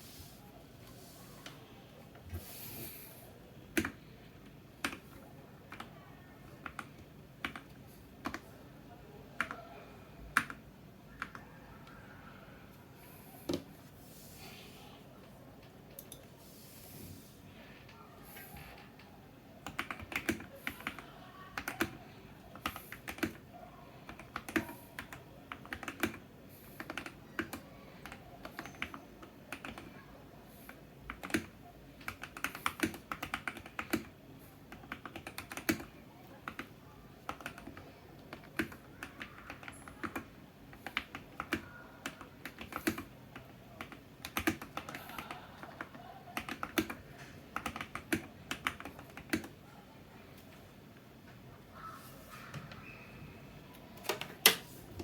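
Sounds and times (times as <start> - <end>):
mechanical keyboard typing: 3.7 - 5.9, 6.5 - 8.5, 18.6 - 23.5, 24.1 - 29.9, 30.7 - 49.6.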